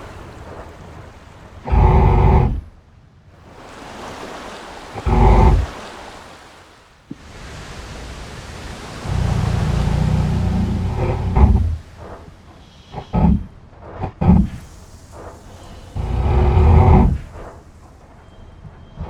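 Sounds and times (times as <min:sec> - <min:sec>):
rain hiss: 0:00.0 - 0:02.7, 0:03.4 - 0:19.0
monster snoring: 0:01.6 - 0:02.6, 0:05.0 - 0:05.9, 0:09.0 - 0:12.0, 0:12.7 - 0:14.7, 0:15.8 - 0:17.4.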